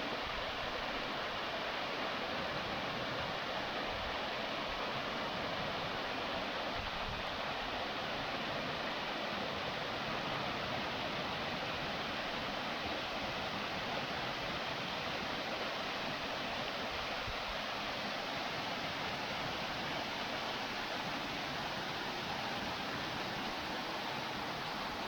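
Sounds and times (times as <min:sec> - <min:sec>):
waterfall rushing: 0:14.1 - 0:25.0.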